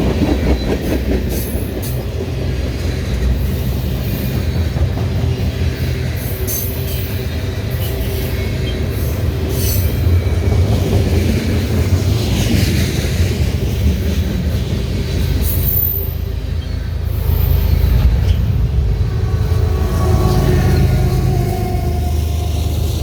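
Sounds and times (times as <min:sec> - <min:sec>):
clickety-clack of wheels: 0:00.0 - 0:16.7
train wheels rumbling on rail: 0:00.0 - 0:23.0.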